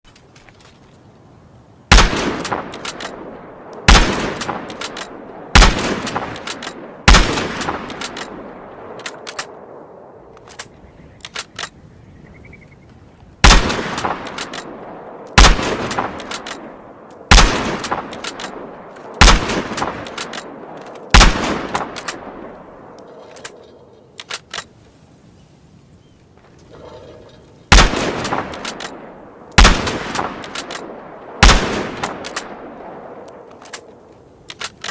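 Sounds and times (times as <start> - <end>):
rifle shots with ringing echo: 1.9 - 10.3, 13.4 - 23.3, 27.7 - 33.5
faint rifle bolt clicks: 2.3 - 5.2, 7.6 - 9.7, 10.3 - 11.8, 14.0 - 25.0, 28.2 - 31.4, 32.0 - 34.9.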